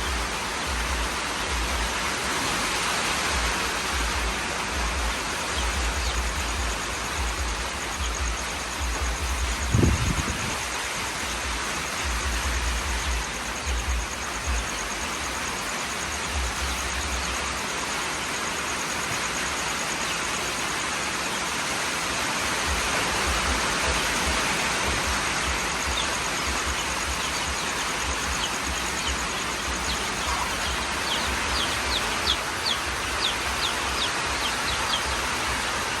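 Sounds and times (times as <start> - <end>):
steady rain: 0.0 - 36.0
chicks peeping: 22.8 - 36.0.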